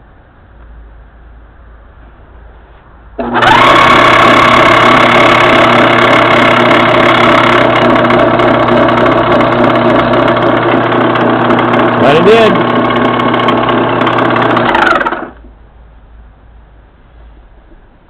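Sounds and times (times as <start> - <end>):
lathe motor humming and whining: 3.2 - 15.4.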